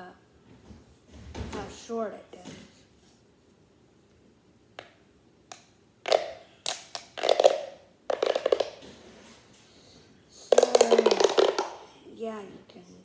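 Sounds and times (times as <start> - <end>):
plastic fidget tube clicking: 5.5 - 8.8, 10.5 - 11.8.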